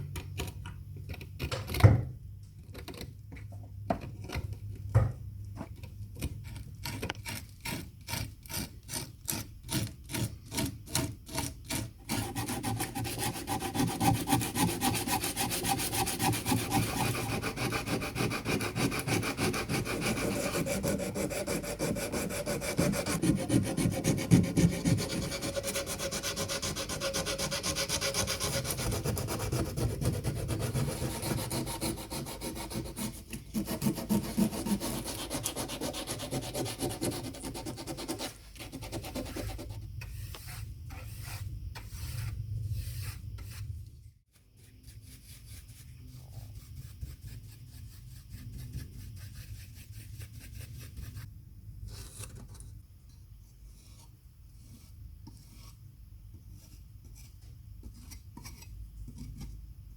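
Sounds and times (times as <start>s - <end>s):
hand sanding strokes: 10.1s - 43.8s, 44.6s - 51.3s.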